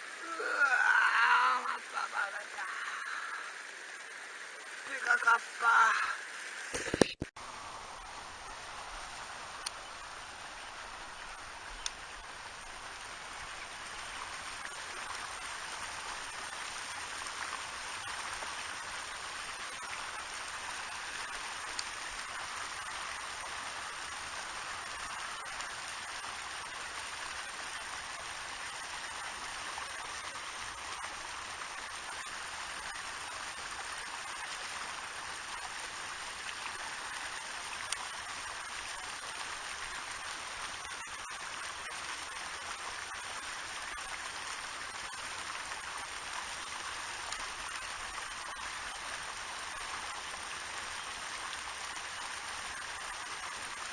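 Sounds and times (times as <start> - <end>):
rushing water: 0.0 - 53.9
faint sharp clicks: 11.8 - 12.0.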